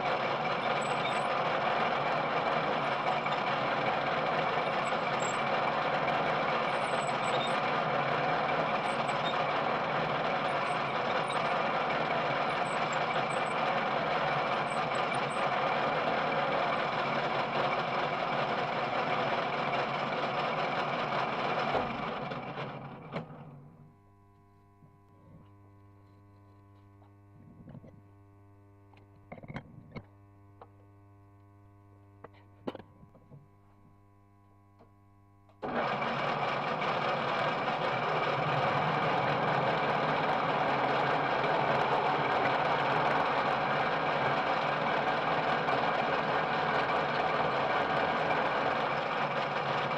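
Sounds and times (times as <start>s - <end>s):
metal lathe whirring: 0.0s - 23.0s, 35.6s - 49.9s
low electrical hum: 23.5s - 35.6s.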